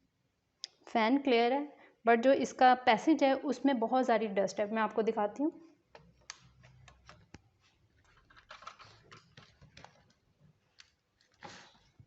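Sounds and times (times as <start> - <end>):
clicks and scrapes of plastic parts: 8.0 - 10.2.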